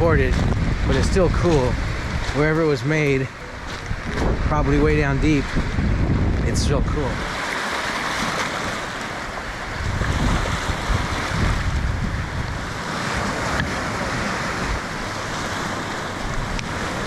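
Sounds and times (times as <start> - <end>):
surf washing against rocks: 0.0 - 17.0
wind rumbling on microphone: 0.0 - 17.0.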